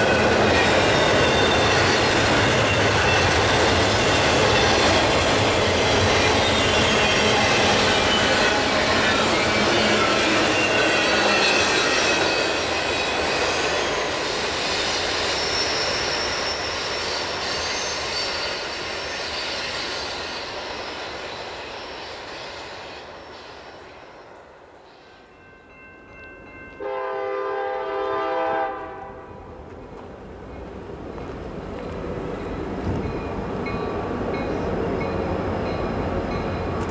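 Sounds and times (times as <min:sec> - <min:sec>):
wheels squealing on rails: 0:00.0 - 0:25.9
freight train rolling past: 0:00.0 - 0:36.9
locomotive air horn: 0:26.8 - 0:29.4.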